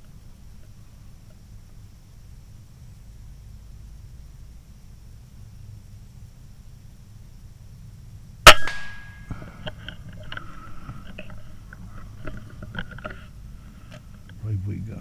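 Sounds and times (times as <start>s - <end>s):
air rifle shot: 8.4s - 9.1s
faint clicks: 9.3s - 13.3s.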